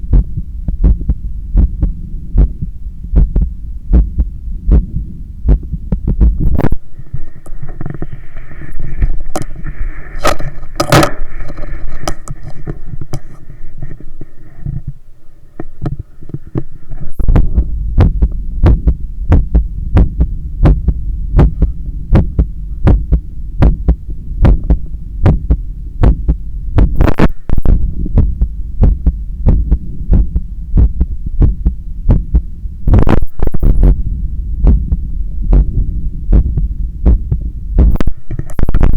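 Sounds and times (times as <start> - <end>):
heartbeat through stethoscope: 0.0 - 7.3, 15.9 - 38.9
stethoscope rubbing on skin: 7.0 - 14.9.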